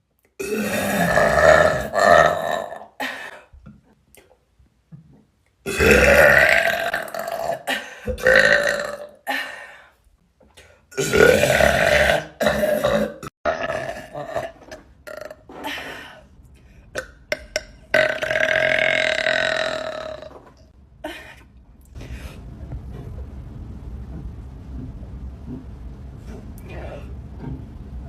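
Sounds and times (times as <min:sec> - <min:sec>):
woman burping: 0:00.4 - 0:03.4, 0:05.7 - 0:09.6, 0:11.0 - 0:16.2, 0:17.0 - 0:21.4
low steady rumble: 0:20.6 - 0:28.0.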